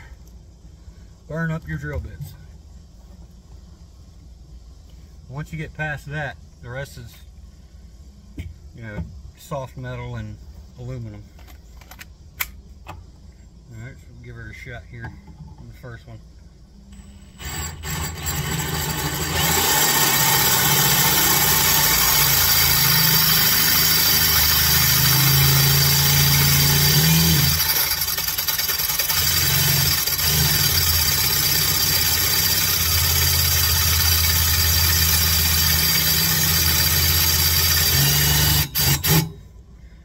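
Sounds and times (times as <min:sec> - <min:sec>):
power drill drilling into metal: 0:17.3 - 0:39.4.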